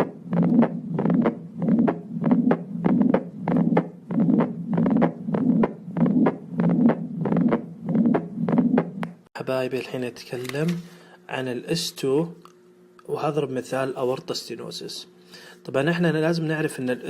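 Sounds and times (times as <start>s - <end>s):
rushing heart murmur: 0.0s - 9.0s
quick regular heartbeat: 0.0s - 9.2s.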